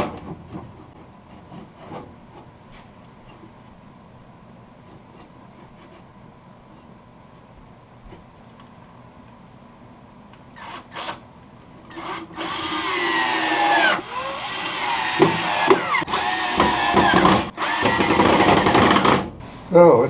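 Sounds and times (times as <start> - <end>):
power drill drilling wood: 12.0 - 19.3.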